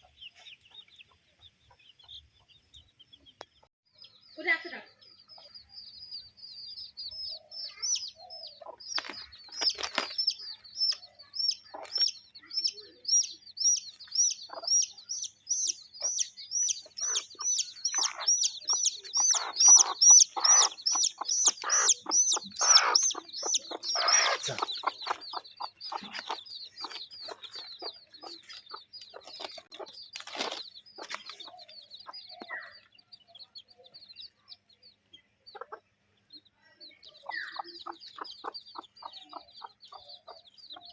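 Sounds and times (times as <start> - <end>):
birds chirping: 0.0 - 40.9.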